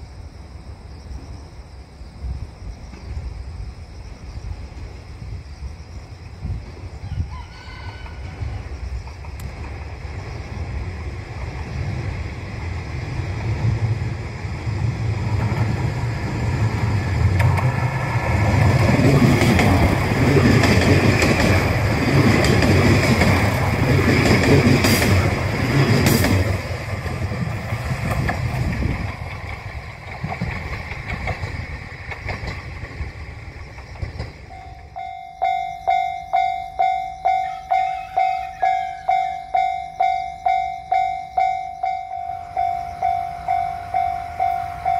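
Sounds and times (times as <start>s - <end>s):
diesel railcar passing: 0.0s - 44.9s
level crossing warning bell: 34.5s - 44.9s.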